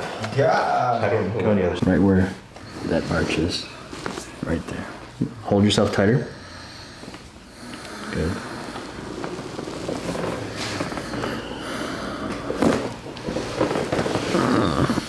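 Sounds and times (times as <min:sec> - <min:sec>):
steady background noise: 0:00.0 - 0:15.0
loud chiropractic crack: 0:08.7 - 0:15.0.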